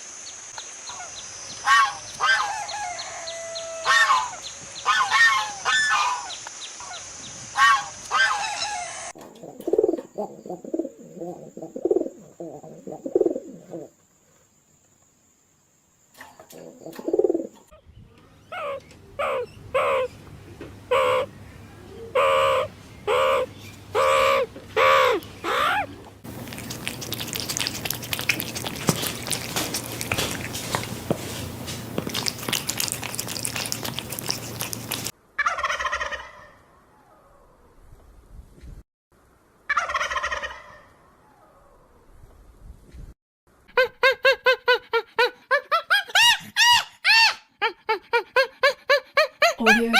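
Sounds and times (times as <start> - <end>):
bird calls: 16.2 - 20.3, 20.9 - 26.0.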